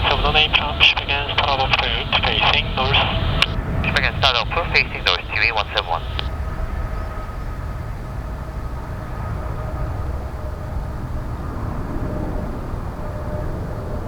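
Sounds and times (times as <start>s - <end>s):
faint steady whine: 0.0s - 11.1s
distant jet engines rumbling: 0.0s - 14.0s.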